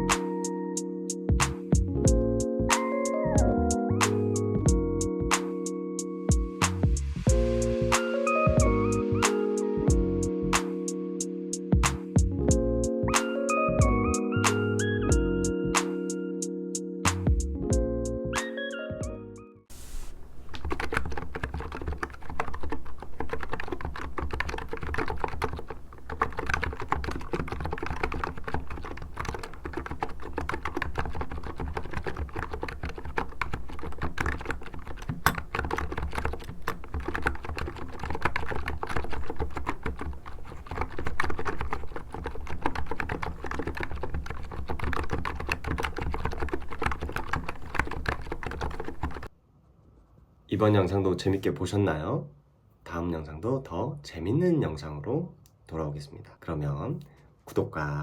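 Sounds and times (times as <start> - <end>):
keyboard typing clacks: 20.5 - 49.3.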